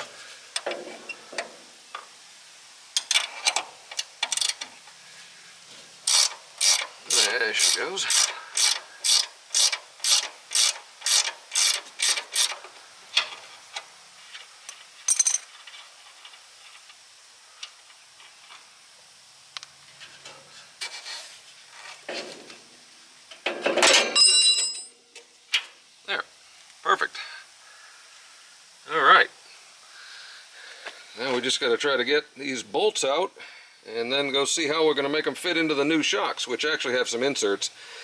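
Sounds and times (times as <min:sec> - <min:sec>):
ratchet wrench clicking: 0:03.0 - 0:04.7, 0:06.0 - 0:12.6.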